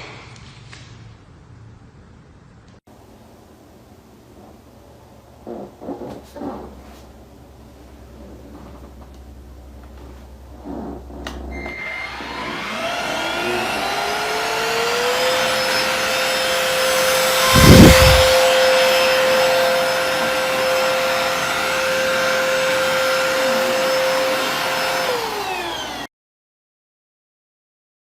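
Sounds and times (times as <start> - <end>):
stick vacuum motor whine: 11.5 - 26.1.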